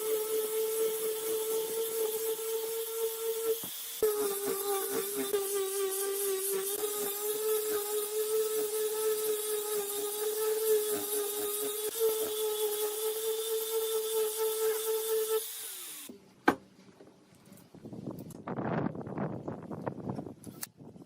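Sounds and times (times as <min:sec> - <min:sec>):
power tool motor running: 0:00.0 - 0:16.1.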